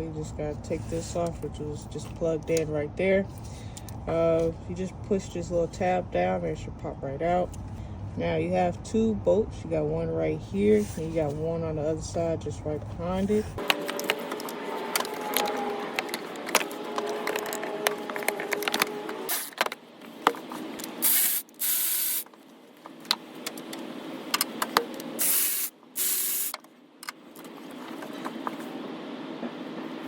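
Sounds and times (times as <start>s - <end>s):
short hissing bursts: 21.0s - 22.2s, 25.2s - 26.5s.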